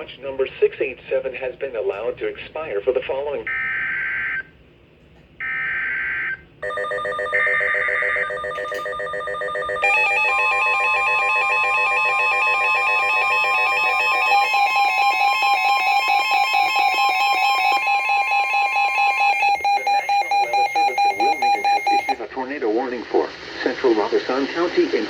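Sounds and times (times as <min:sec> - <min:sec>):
steady warning alarm tone: 0:05.4 - 0:22.2
pulsing warbling alert alarm: 0:06.6 - 0:22.2
digital data bursts: 0:09.8 - 0:22.2.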